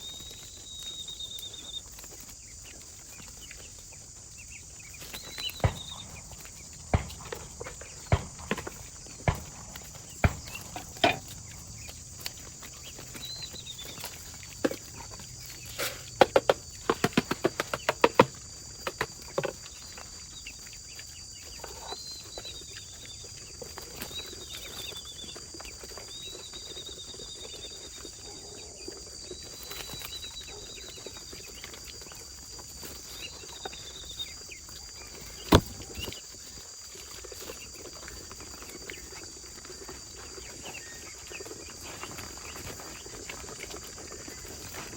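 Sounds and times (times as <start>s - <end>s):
high insect drone: 3.7s - 22.0s
drawn-out high bird calls: 5.0s - 17.8s
sharp knock: 5.4s - 12.5s
sharp taps: 5.4s - 12.5s.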